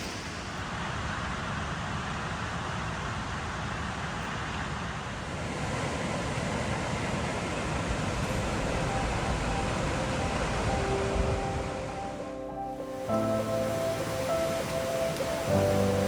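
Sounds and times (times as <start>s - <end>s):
creek water rushing: 4.6s - 16.0s.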